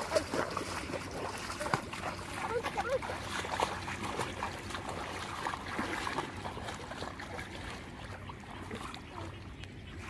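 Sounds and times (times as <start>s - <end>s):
water sloshing and splashing: 0.0s - 10.0s.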